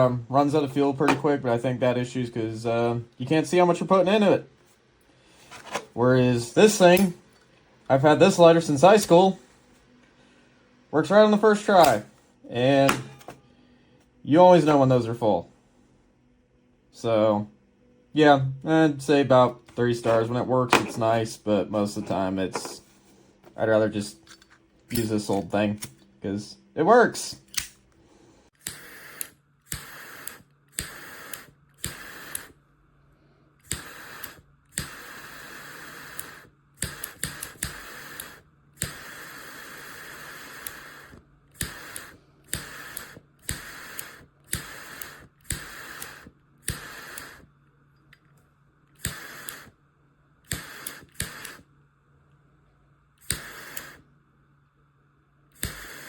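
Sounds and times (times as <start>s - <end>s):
hiss of gas flame: 6.3s - 7.2s, 10.4s - 13.4s, 27.2s - 47.6s, 48.9s - 49.8s, 50.4s - 51.7s, 53.2s - 54.1s, 55.5s - 56.0s
lighter clicking: 27.4s - 27.8s, 28.6s - 32.6s, 33.6s - 47.5s, 48.9s - 49.8s, 50.4s - 51.6s, 53.2s - 54.0s, 55.5s - 56.0s.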